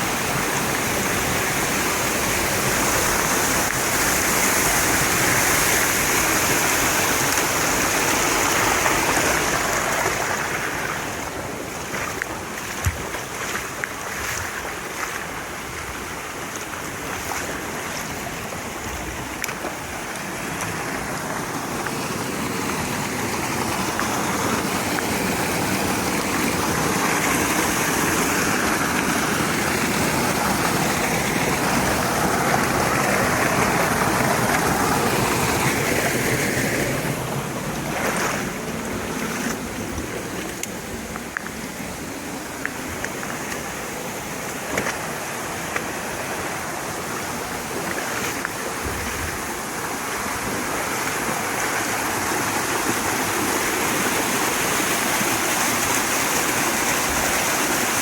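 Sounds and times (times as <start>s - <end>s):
mountain stream rushing: 0.0s - 58.0s.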